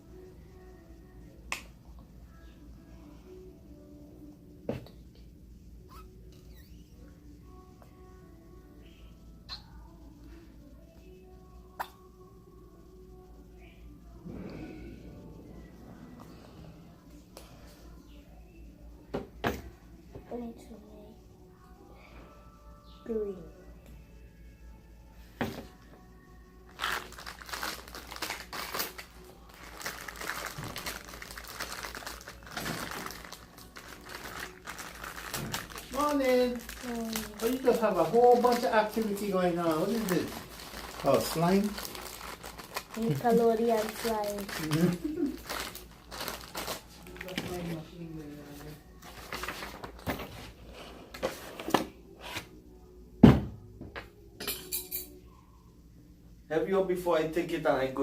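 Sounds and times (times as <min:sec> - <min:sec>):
plastic packaging crinkling: 0:26.7 - 0:47.8.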